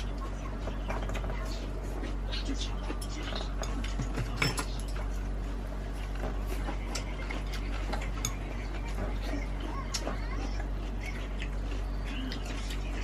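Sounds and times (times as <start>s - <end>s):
air conditioner hum: 0.0s - 13.0s
chopsticks and dishes clicking: 2.8s - 5.1s, 6.2s - 9.1s.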